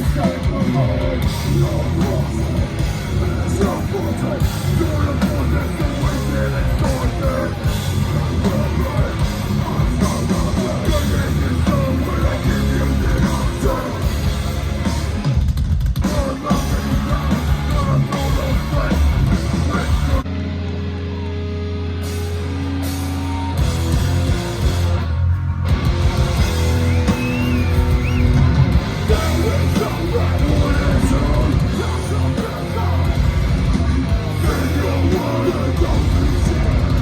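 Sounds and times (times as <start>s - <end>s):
bass guitar: 0.0s - 37.0s
distorted guitars: 0.0s - 37.0s
drums: 0.0s - 37.0s
shouted vocals: 16.1s - 24.3s, 26.6s - 37.0s.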